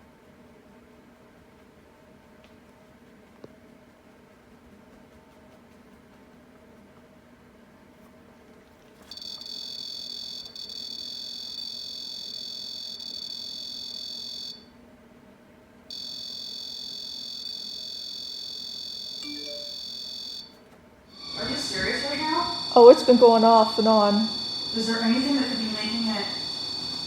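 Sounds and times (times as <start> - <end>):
high-pitched electronic alarm beep: 9.1 - 14.6, 15.9 - 20.5, 22.3 - 27.0.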